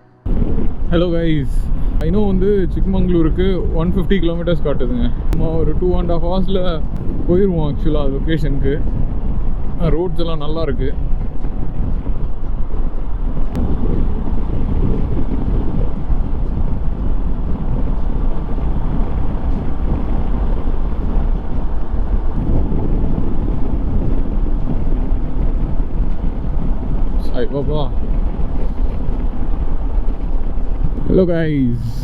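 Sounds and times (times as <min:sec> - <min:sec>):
wind buffeting microphone: 0:00.0 - 0:32.0
motorcycle engine running: 0:06.9 - 0:31.6.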